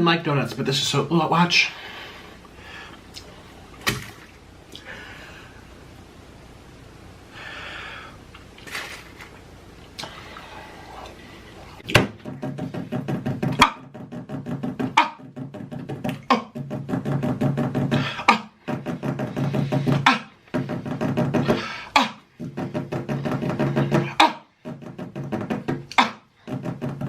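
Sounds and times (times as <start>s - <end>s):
beatbox style music: 14.8s - 26.6s.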